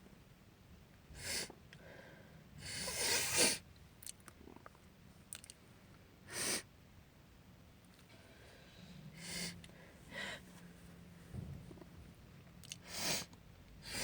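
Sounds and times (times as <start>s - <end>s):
woman sniffing: 2.6s - 3.6s, 9.1s - 10.4s, 12.8s - 14.0s.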